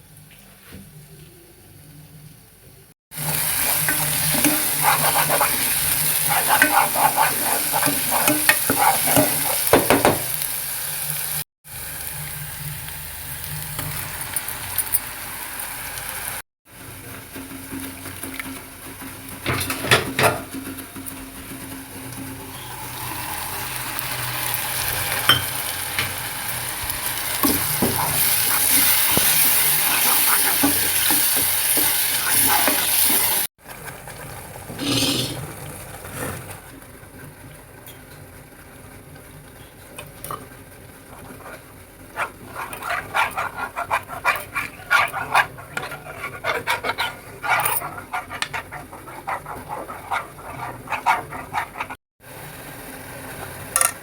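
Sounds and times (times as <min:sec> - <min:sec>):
stirring in a pan: 0:03.1 - 0:11.4, 0:23.3 - 0:36.8, 0:38.5 - 0:52.3
food sizzling in a pan: 0:03.1 - 0:54.0
spoon scraping a pan: 0:03.3 - 0:10.3, 0:27.4 - 0:33.5, 0:34.7 - 0:35.5, 0:41.1 - 0:52.0.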